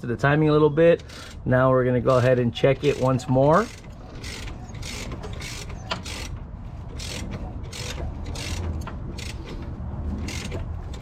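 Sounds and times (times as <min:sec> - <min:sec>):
socket ratchet clicking: 0:07.0 - 0:09.6.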